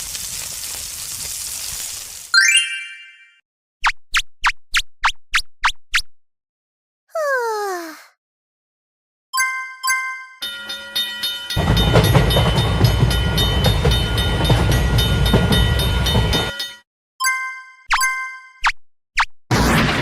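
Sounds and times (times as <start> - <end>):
railroad crossing bell clanging: 9.5 - 16.8
train rumbling past: 11.5 - 16.7.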